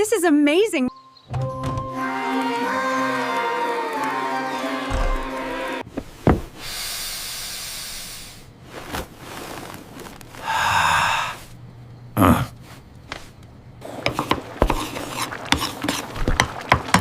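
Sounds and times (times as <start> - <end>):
short thuds: 5.9 - 6.6
hissing: 6.5 - 8.5.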